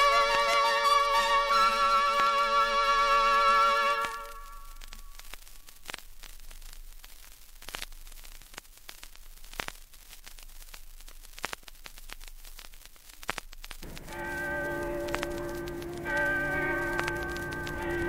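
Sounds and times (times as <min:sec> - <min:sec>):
vinyl surface hiss: 0:00.0 - 0:18.0
vinyl clicks and pops: 0:04.0 - 0:18.0.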